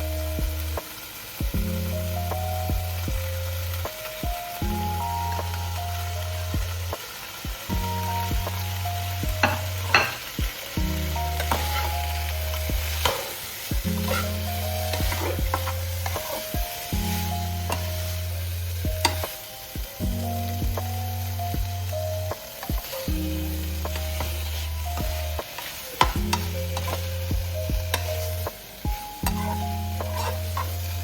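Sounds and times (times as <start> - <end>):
food sizzling in a pan: 0.0 - 31.0
mellow background music: 0.0 - 31.0
utensil clinking against pan: 9.4 - 10.3, 13.9 - 16.6, 29.2 - 31.0.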